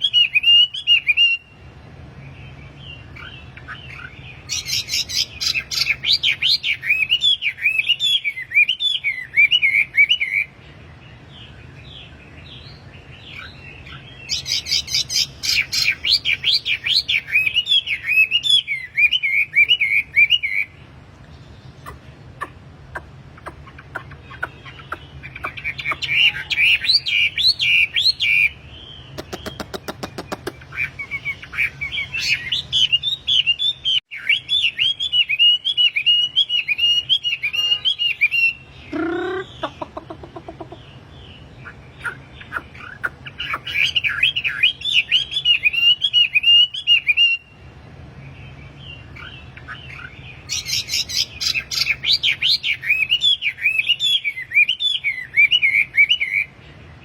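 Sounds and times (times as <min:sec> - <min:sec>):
low steady hum: 0:00.0 - 0:34.0
bird rapid high chirping: 0:00.0 - 0:47.7, 0:48.5 - 0:56.6.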